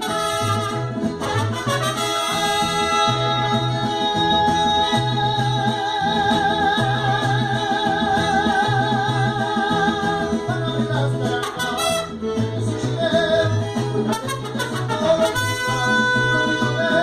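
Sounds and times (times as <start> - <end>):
mariachi band playing: 0.0 - 17.0.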